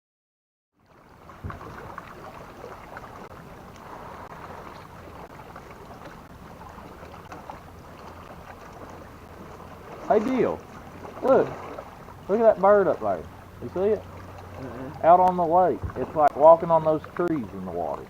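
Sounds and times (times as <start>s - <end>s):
water lapping against kayak hull: 0.8s - 18.0s
wind on microphone: 1.3s - 7.2s, 14.5s - 16.6s.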